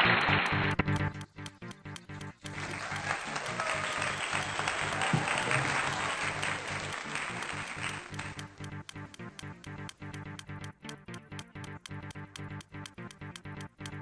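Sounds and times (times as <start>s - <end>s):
electronic music with beat: 0.0s - 14.0s.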